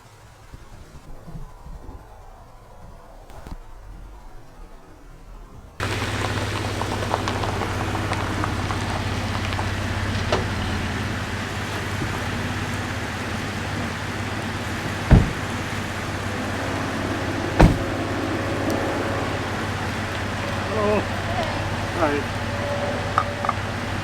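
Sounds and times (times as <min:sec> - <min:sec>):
steady low hum: 0:01.5 - 0:24.0
sharp knocks: 0:14.8 - 0:24.0.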